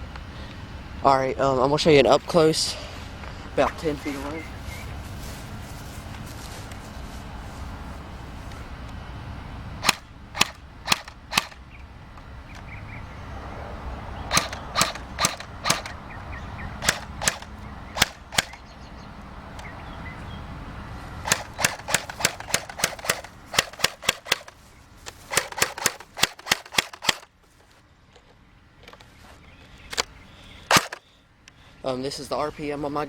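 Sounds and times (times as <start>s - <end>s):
airsoft rifle snapping shots: 9.8s - 11.6s, 14.3s - 16.0s, 16.8s - 18.7s, 21.2s - 24.6s, 25.3s - 27.3s, 30.7s - 31.1s.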